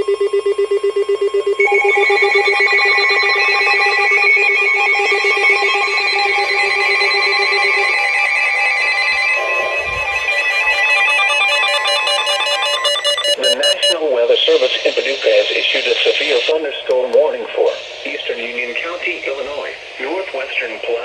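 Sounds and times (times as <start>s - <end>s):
shrill trilling electronic alarm: 0.1s - 14.0s
pulsing low alert tone: 8.7s - 14.0s.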